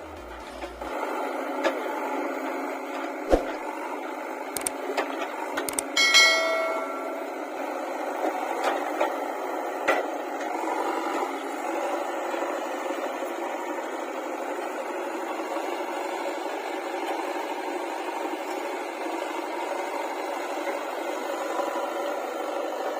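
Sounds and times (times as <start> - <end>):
machine running: 5.7 - 7.9
ringing metallic clang: 5.9 - 7.6.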